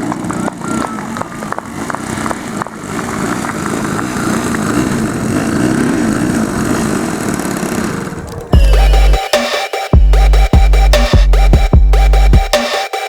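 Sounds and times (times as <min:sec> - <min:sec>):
model aircraft engine running: 0:00.0 - 0:08.6.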